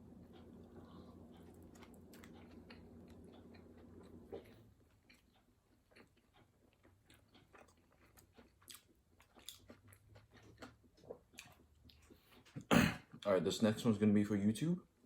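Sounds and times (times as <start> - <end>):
low hum: 0.0 - 4.8
person chewing food: 0.1 - 12.7.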